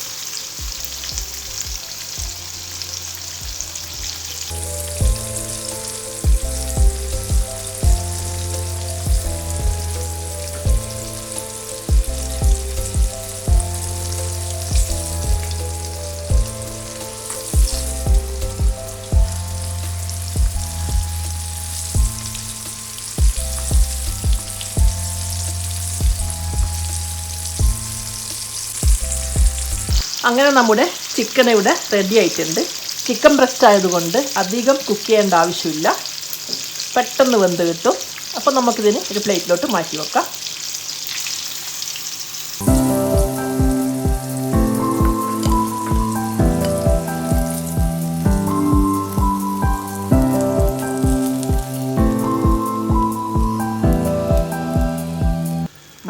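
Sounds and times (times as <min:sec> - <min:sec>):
background music with beat: 0:00.0 - 0:30.1, 0:42.6 - 0:55.7
chicken frying in oil: 0:00.0 - 0:56.0.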